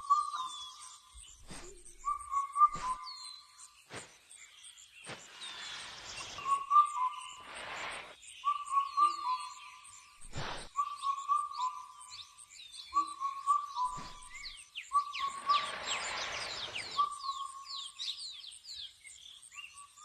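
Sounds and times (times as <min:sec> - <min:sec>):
whistled bird call: 0:00.0 - 0:03.7, 0:05.1 - 0:18.4
rustling hisses: 0:01.3 - 0:02.1, 0:02.7 - 0:03.0, 0:03.9 - 0:04.4, 0:05.0 - 0:08.2, 0:10.2 - 0:10.8, 0:13.8 - 0:17.1
high insect trill: 0:03.9 - 0:08.2.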